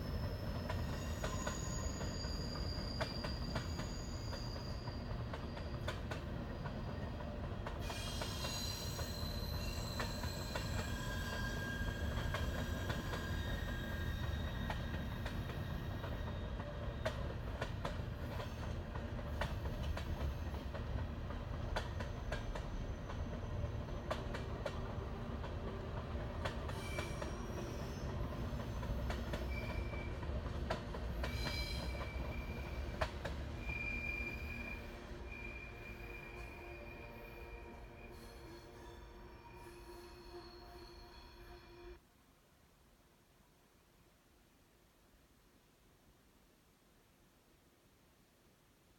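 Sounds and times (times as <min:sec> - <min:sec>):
high-pitched wheel squeal: 0:00.0 - 0:05.8, 0:07.9 - 0:16.3, 0:33.6 - 0:42.0.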